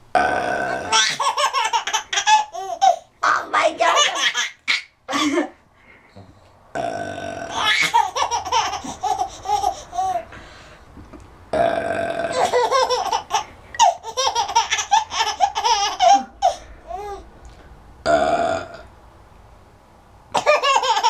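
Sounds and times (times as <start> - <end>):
person belching: 0.1 - 1.2, 6.7 - 7.8, 11.5 - 12.5, 18.0 - 18.9
baby laughing: 0.9 - 3.1, 3.8 - 5.6, 7.5 - 10.3, 12.3 - 17.3, 20.4 - 21.0.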